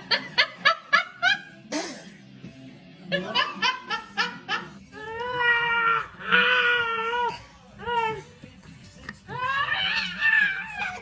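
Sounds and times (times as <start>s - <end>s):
laughter in ha-ha bursts: 0.0s - 1.6s, 3.1s - 4.8s.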